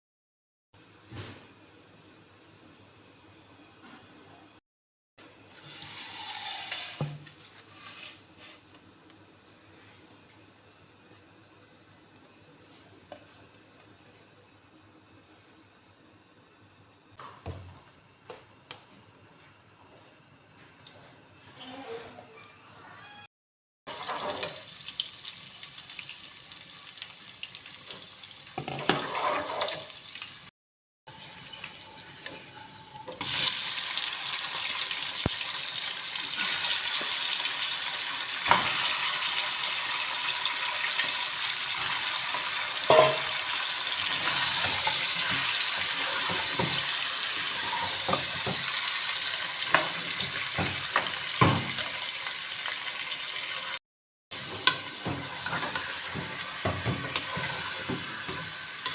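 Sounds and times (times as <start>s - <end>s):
food sizzling in hot oil: 5.2s - 12.3s, 23.9s - 30.5s, 31.1s - 53.8s, 54.4s - 58.9s
spoon scraping a pot: 7.6s - 8.6s, 28.8s - 29.9s, 57.1s - 58.9s.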